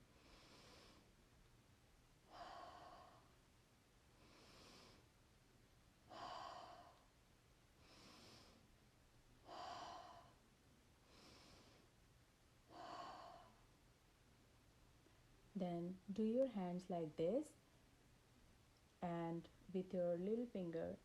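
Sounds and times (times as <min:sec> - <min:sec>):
soft inhale through nose: 0:00.1 - 0:01.1, 0:02.3 - 0:03.4, 0:04.2 - 0:05.1, 0:07.8 - 0:08.7, 0:09.5 - 0:10.4, 0:11.0 - 0:11.9.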